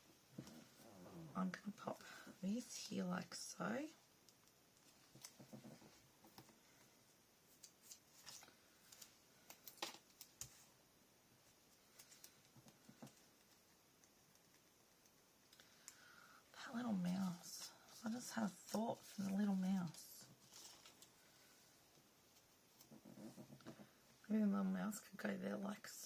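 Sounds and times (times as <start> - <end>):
paper rustling: 7.5 - 10.7, 17.1 - 21.5.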